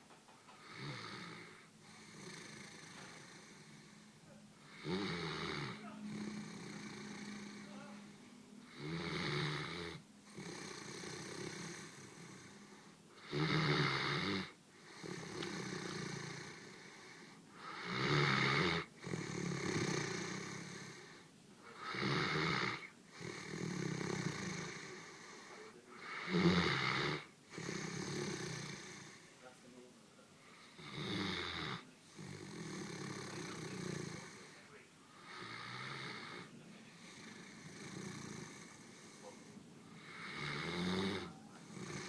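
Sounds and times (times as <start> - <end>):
dog snoring: 0.0 - 29.8, 30.4 - 42.0.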